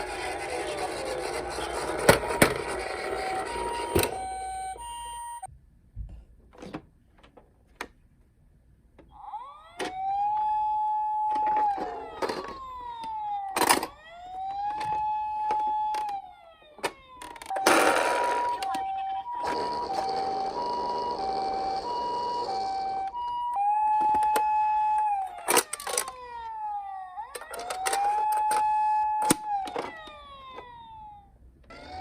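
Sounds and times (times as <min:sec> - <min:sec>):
toy electronic siren: 0:00.0 - 0:05.5, 0:09.1 - 0:32.0
clicks: 0:11.1 - 0:20.1.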